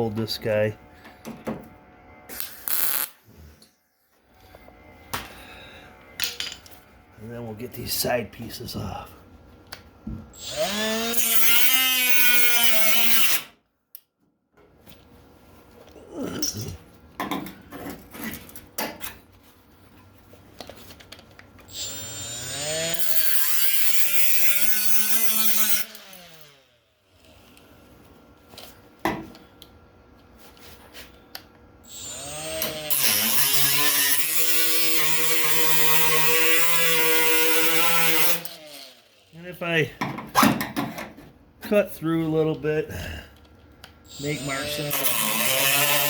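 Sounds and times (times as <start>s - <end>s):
cut-off tool whining through steel: 2.3s - 3.6s, 10.4s - 13.5s, 21.7s - 27.6s, 31.8s - 39.3s, 44.0s - 46.0s.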